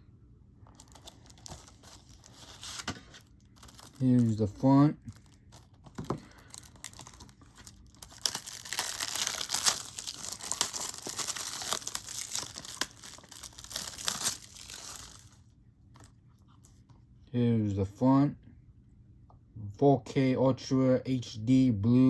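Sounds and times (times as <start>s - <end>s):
plastic packaging crinkling: 0.7s - 4.4s, 5.0s - 15.4s.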